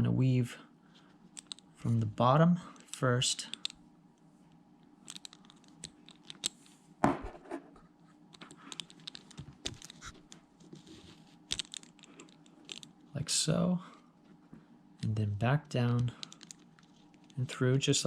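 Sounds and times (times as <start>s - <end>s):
strap scratching and rustling: 8.0s - 13.0s, 16.2s - 17.6s.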